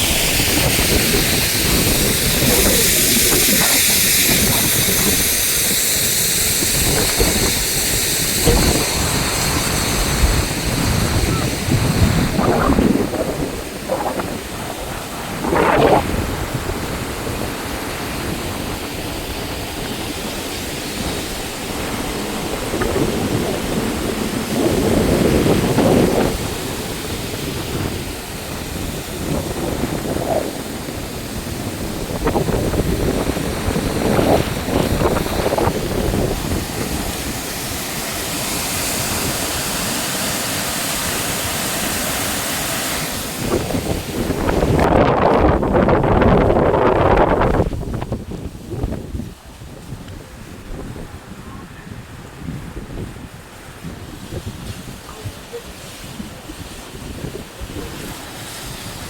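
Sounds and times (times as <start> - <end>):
water rushing at a dam: 0.0 - 59.0.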